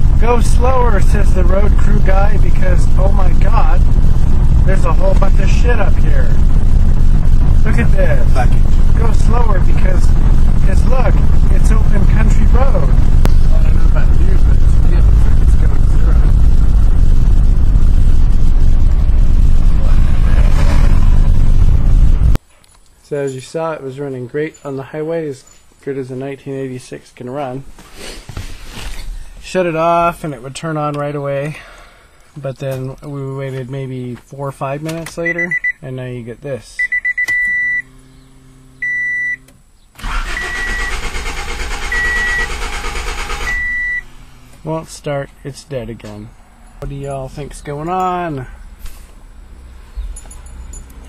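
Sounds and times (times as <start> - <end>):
in-cabin car road noise: 0.0 - 22.4, 36.8 - 51.0
quiet steady hum: 0.0 - 50.9
car warning chime beeping: 35.2 - 35.8, 36.8 - 38.0, 38.8 - 39.5, 41.8 - 42.6, 43.3 - 44.2
starter cranking engine: 40.0 - 43.8.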